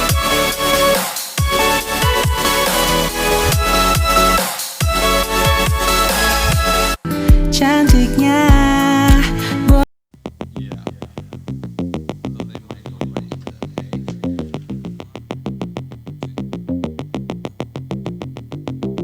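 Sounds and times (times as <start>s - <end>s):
synthesizer and drum machine track: 0.0s - 9.8s.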